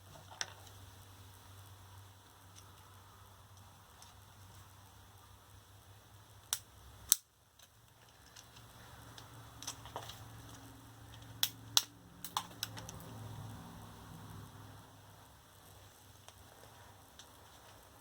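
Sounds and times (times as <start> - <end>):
battery parts clicking and tapping: 6.5 - 13.1.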